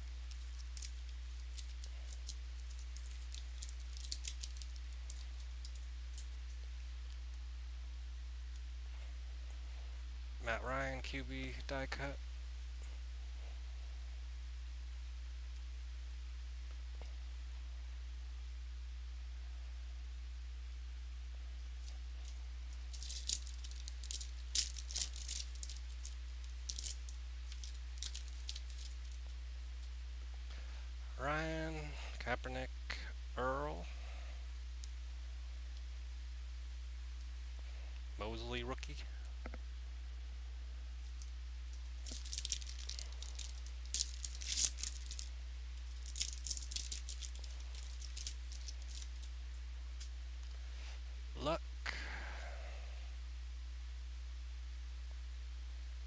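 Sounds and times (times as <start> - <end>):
low electrical hum: 0.0 - 56.0
cards clicking and rustling: 0.3 - 6.4, 22.2 - 29.2, 42.0 - 45.3, 45.9 - 49.3.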